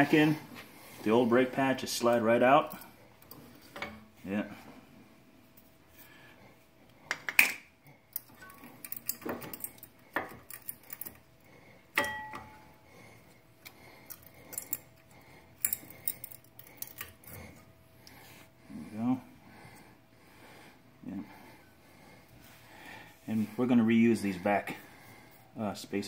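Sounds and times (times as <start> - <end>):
ringing metal clink: 12.0 - 12.6.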